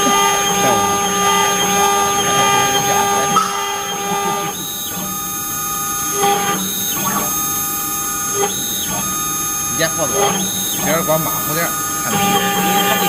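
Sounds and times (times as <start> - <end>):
cnc router whining: 0.0 - 13.0.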